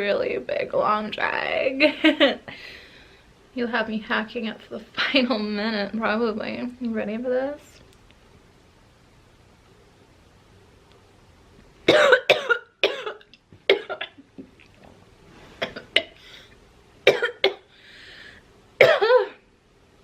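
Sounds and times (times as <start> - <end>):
breathy exhale: 2.5 - 3.3, 17.7 - 18.5
woman coughing: 11.9 - 14.2, 17.1 - 17.7, 18.8 - 19.4.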